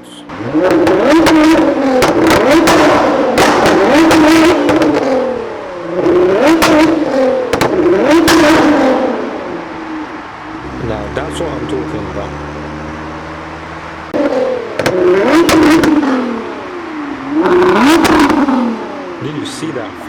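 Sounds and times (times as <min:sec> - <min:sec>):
car engine revving hard: 0:00.2 - 0:20.0
exhaust pops and bangs: 0:00.3 - 0:05.4, 0:06.0 - 0:09.1, 0:14.0 - 0:16.4, 0:17.6 - 0:18.7.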